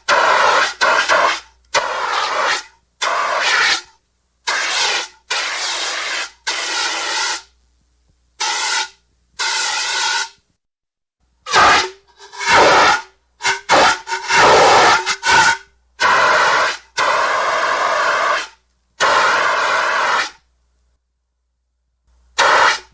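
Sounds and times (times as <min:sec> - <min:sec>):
fire extinguisher hissing sprays: 0:22.4 - 0:22.9.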